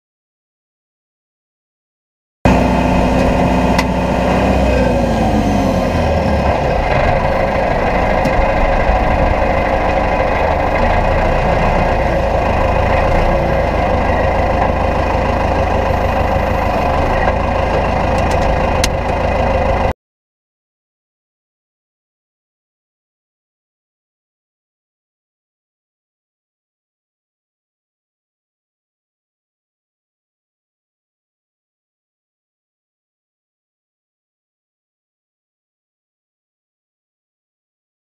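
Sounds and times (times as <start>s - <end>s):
tractor diesel engine running: 2.5s - 20.0s.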